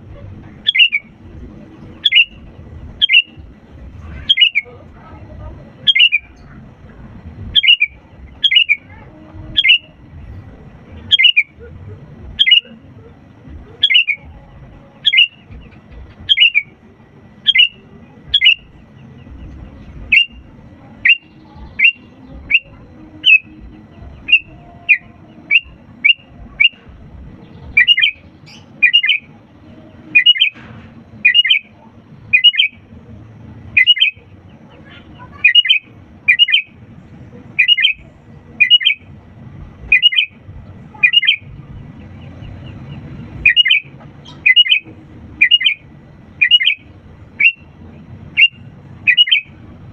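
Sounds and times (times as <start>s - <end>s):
bulbul calling sharp notes: 0.6s - 1.2s, 2.0s - 3.4s, 4.2s - 4.7s, 5.8s - 6.4s, 7.5s - 10.0s, 11.1s - 11.7s, 12.3s - 12.8s, 13.7s - 14.4s, 15.0s - 18.8s, 20.1s - 27.0s, 27.6s - 29.4s, 31.2s - 32.8s, 33.7s - 34.3s, 35.2s - 36.8s, 37.6s - 39.1s, 39.9s - 41.5s, 43.4s - 49.6s.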